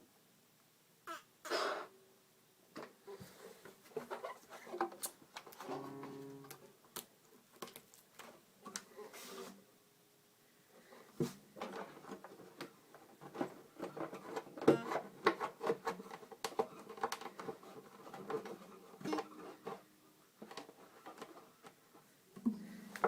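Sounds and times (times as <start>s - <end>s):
faint guitar string notes: 5.6s - 6.8s, 19.0s - 20.1s, 22.4s - 23.0s.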